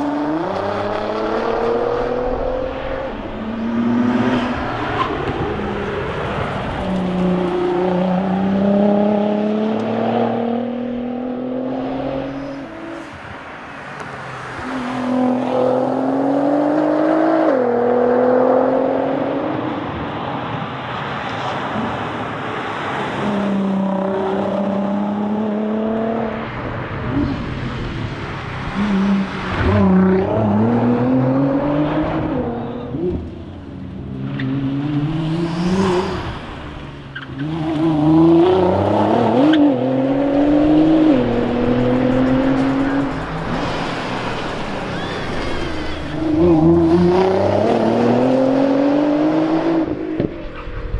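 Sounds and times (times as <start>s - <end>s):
car engine accelerating hard: 0.0s - 20.0s, 22.8s - 50.9s.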